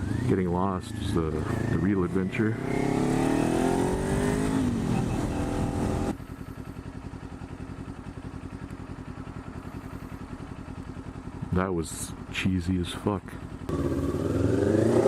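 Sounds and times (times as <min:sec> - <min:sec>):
motorcycle engine revving: 0:00.0 - 0:08.6, 0:13.6 - 0:15.0
motorcycle engine idling: 0:03.6 - 0:15.0.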